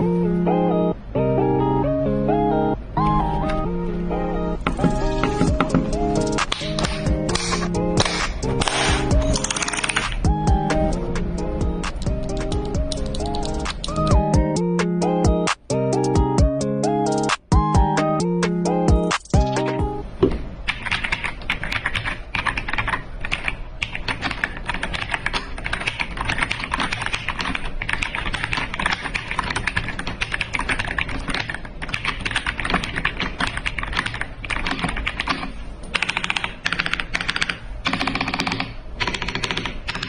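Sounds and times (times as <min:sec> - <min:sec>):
mechanical keyboard typing: 0:05.2 - 0:10.4, 0:11.8 - 0:14.2, 0:20.7 - 0:40.0.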